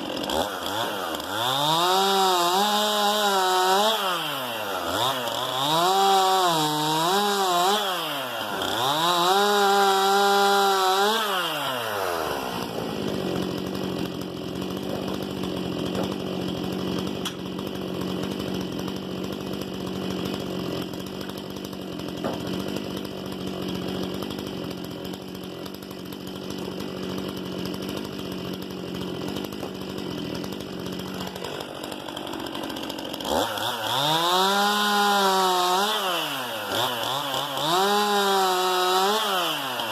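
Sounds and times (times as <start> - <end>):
chainsaw revving and cutting wood: 0.0 - 39.9.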